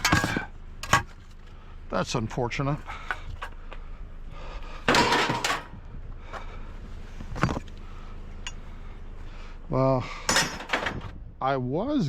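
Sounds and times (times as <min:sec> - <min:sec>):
scrap scraping clatter: 0:00.0 - 0:01.4, 0:04.9 - 0:05.8.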